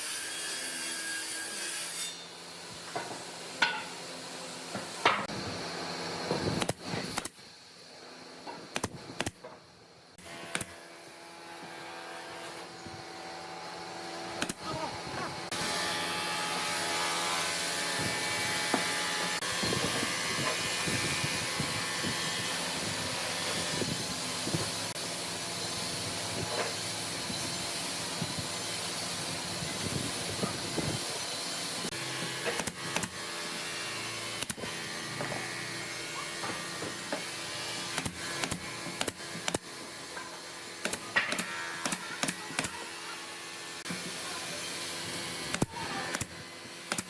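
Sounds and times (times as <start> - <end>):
power tool motor running: 10.2 - 47.0.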